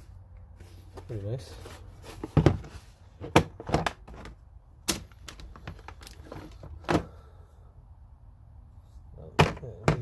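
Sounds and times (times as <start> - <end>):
plastic case clicks and knocks: 3.2 - 4.3, 9.4 - 10.0.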